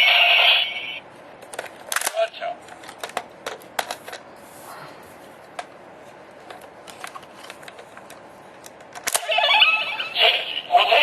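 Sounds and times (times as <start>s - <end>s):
toy electronic sound effect: 0.0s - 1.0s, 9.1s - 11.0s
synthetic voice from toy speaker: 9.2s - 11.0s.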